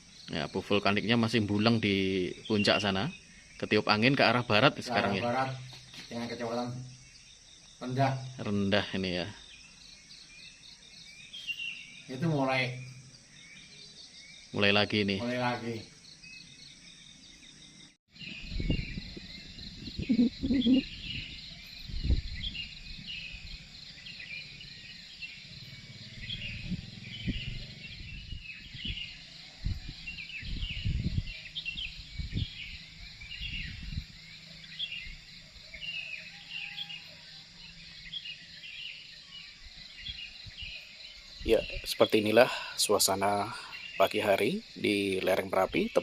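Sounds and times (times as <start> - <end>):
small birds chirping: 0.0 - 46.0.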